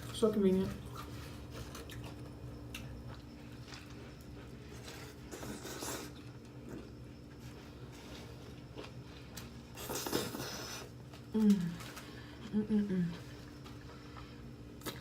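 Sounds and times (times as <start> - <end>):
low steady hum: 0.0 - 15.0
person chewing food: 0.8 - 11.2.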